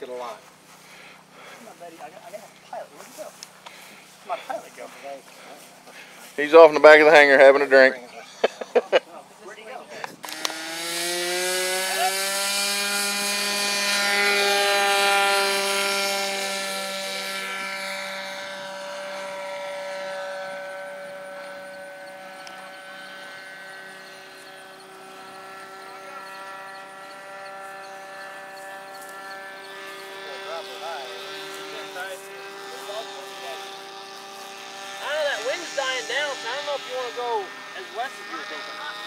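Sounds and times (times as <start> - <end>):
model airplane engine buzz: 0.0 - 39.0.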